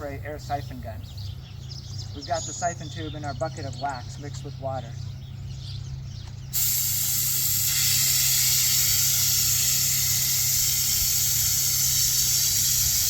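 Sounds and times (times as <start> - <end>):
spray gun hissing: 6.6 - 13.0.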